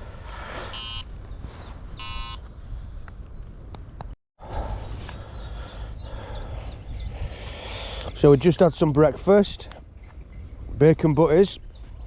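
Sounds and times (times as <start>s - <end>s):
faint outdoor background: 0.0s - 12.0s
bite alarm electronic beeps: 0.8s - 1.1s, 2.0s - 2.4s.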